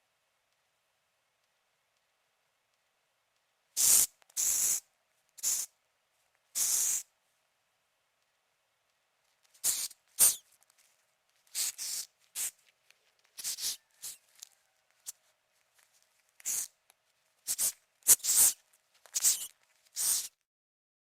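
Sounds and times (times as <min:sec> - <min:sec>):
cockroach hissing: 0:03.8 - 0:04.8, 0:05.4 - 0:05.7, 0:06.6 - 0:07.1, 0:09.6 - 0:10.4, 0:11.5 - 0:12.6, 0:13.4 - 0:14.3, 0:16.4 - 0:16.8, 0:17.4 - 0:20.4.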